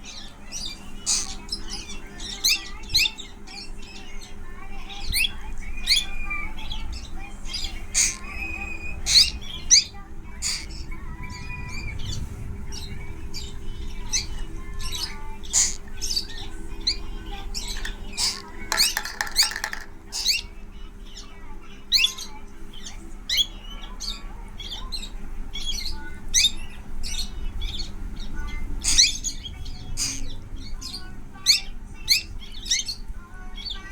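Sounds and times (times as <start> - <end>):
baby parrot squawking and chirping: 0.0 - 33.9
low hum: 5.0 - 21.1.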